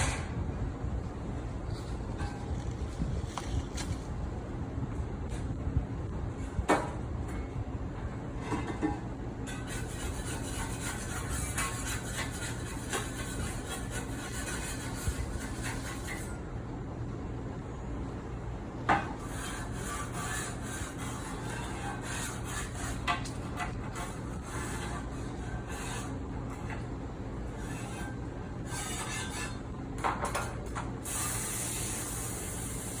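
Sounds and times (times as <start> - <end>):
steady low hum: 0.0 - 33.0
dishes scraping in metal sink: 8.4 - 16.4, 19.0 - 26.9, 27.5 - 31.4
hiss: 31.0 - 33.0.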